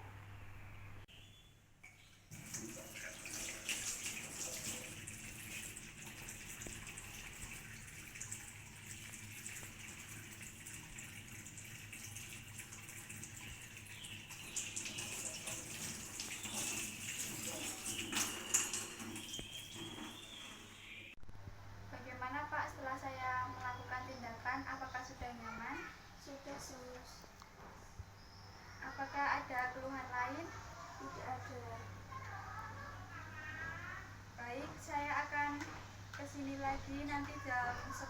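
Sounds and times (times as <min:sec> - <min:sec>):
hands washing under water: 0:02.3 - 0:20.7
tap water running into sink: 0:02.3 - 0:20.8.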